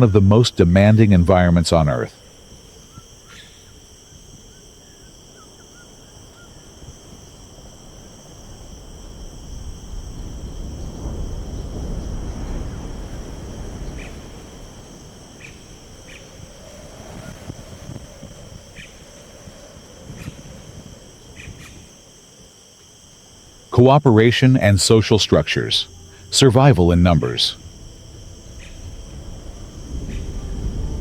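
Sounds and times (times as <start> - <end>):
high insect chorus: 0.0 - 31.0
low rumble: 25.7 - 31.0.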